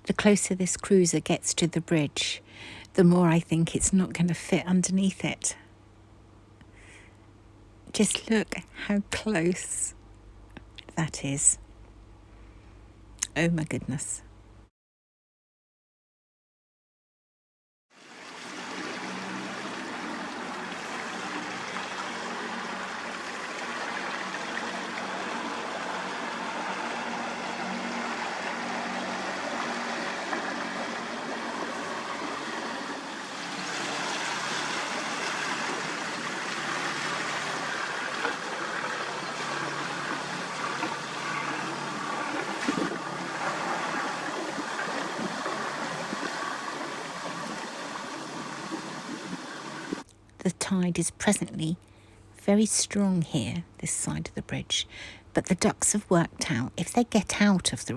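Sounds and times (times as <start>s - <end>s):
fast-flowing river water: 18.0s - 50.0s
boat engine running low: 18.5s - 50.0s.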